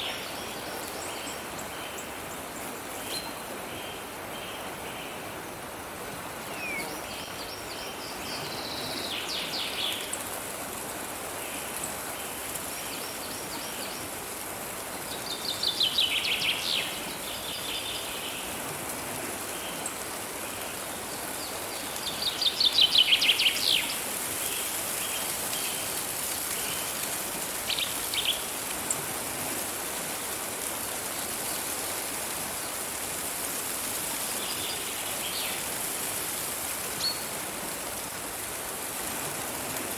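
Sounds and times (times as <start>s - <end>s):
songbirds trilling: 6.4s - 10.2s.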